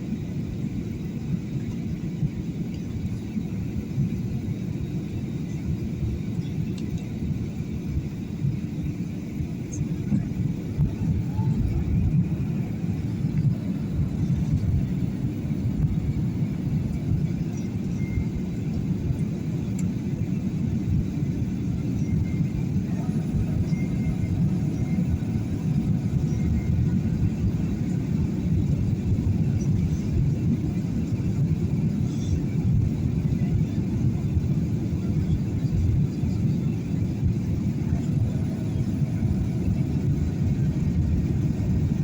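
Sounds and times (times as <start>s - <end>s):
airliner cabin rumble: 0.0s - 42.0s.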